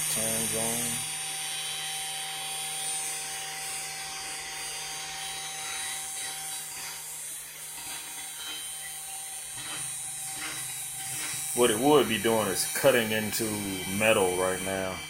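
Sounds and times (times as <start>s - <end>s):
machine motors humming and whining: 0.0s - 15.0s.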